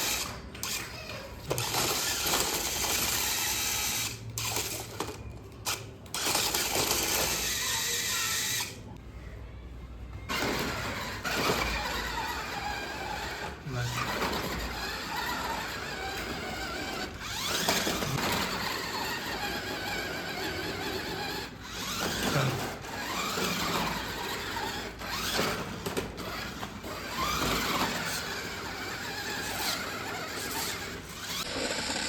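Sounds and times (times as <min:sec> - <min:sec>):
toy car electric motor whining: 0:00.0 - 0:09.0, 0:10.2 - 0:32.0.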